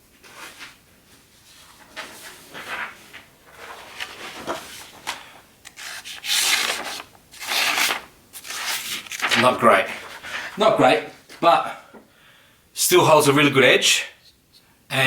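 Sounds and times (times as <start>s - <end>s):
knife blade dragging through paper: 5.7s - 9.4s.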